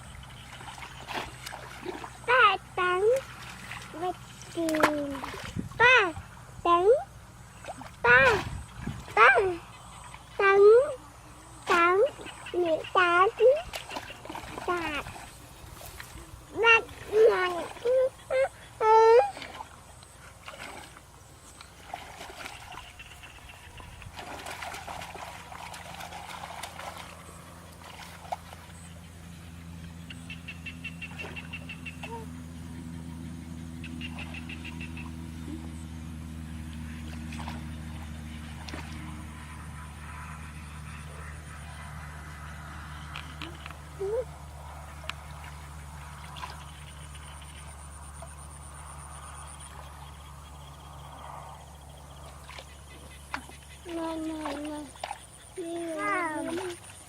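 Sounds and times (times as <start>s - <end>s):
water trickling and splashing: 0.0s - 30.2s, 33.9s - 57.0s
low hum: 19.4s - 53.9s.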